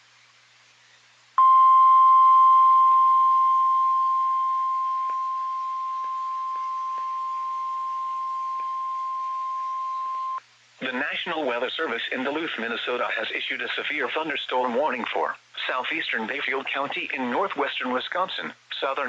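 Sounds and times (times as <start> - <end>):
piercing alarm tone: 1.4 - 10.4.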